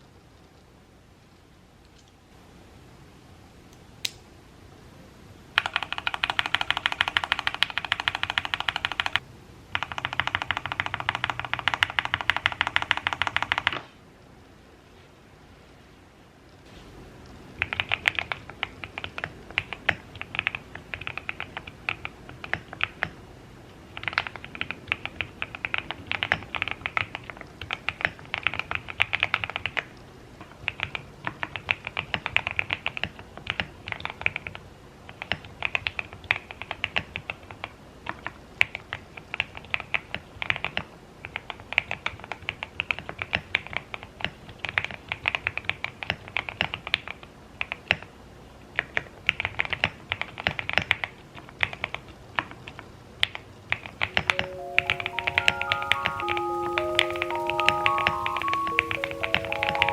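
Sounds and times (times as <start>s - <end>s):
fast typing on mechanical keyboard: 5.6s - 13.8s, 17.6s - 23.2s, 23.9s - 48.1s, 48.7s - 54.3s.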